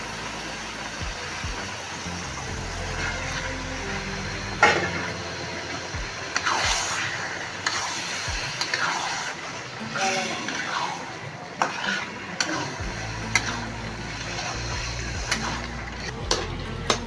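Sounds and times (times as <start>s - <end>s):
low hum: 0.0s - 8.5s, 12.8s - 17.0s
faint sizzle: 0.0s - 17.0s.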